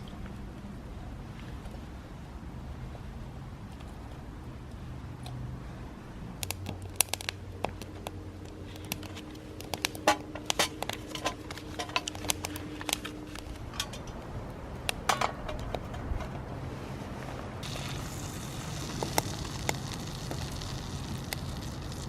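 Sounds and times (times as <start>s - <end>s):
wood fire crackling and popping: 6.4s - 15.9s, 17.6s - 22.0s.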